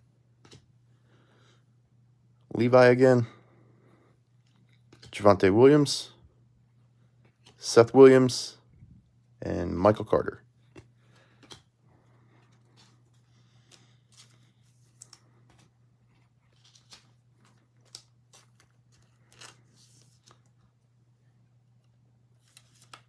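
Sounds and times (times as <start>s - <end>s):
low steady hum: 0.0s - 23.0s
trading cards rustling: 12.3s - 20.6s, 22.4s - 23.0s.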